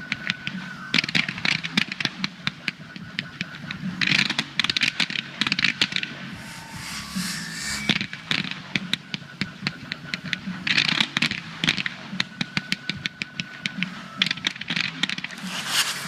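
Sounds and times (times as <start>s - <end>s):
fireworks crackling: 15.2s - 16.0s
fireworks hissing: 15.2s - 16.0s.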